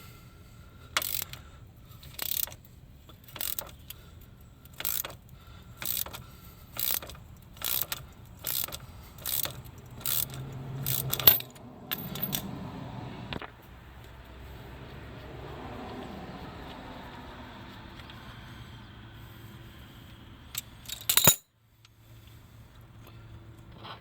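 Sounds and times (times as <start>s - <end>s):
ratchet wrench clicking: 0.9s - 12.5s, 20.5s - 21.5s.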